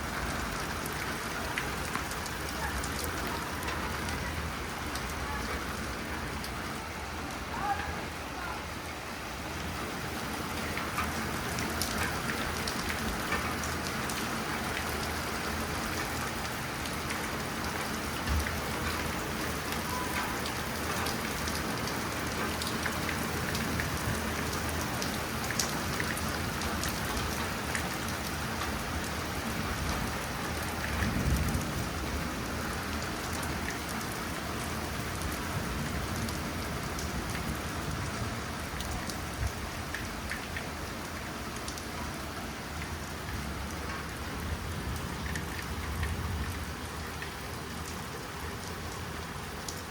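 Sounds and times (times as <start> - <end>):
hail pattering: 10.3 - 40.8.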